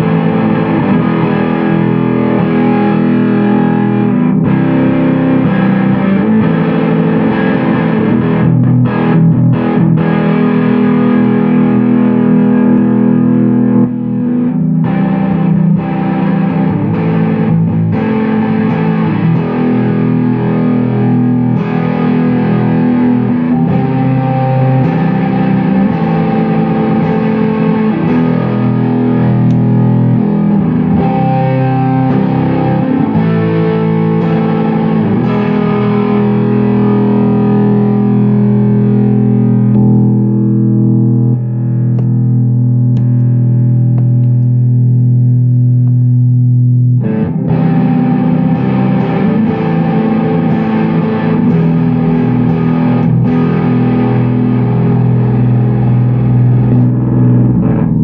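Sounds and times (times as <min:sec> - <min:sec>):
distorted electric guitar chords: 0:00.0 - 0:58.0.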